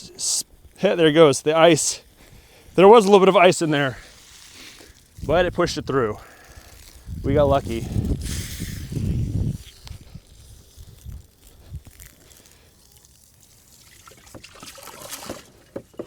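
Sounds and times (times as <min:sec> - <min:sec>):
hose water splashing into container: 0:00.2 - 0:16.0
small knocks: 0:15.2 - 0:16.0.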